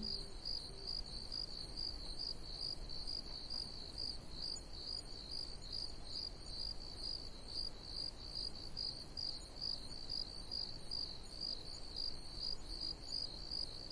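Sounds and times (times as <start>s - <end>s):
crickets chirping: 0.0s - 13.9s.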